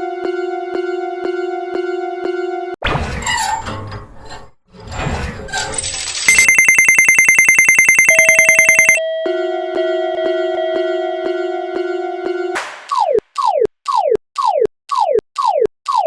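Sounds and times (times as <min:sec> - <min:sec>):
electronic ringing trill: 0:06.3 - 0:09.0
railroad crossing bell: 0:06.4 - 0:12.1.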